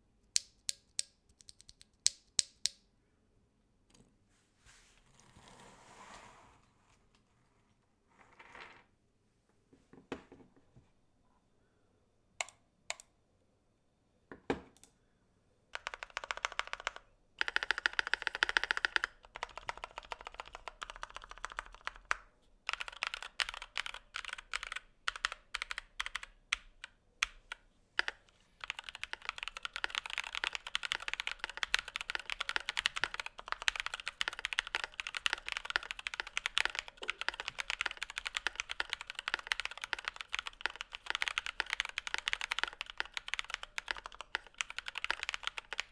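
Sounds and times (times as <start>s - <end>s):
typing on mechanical keyboard: 15.8s - 45.9s.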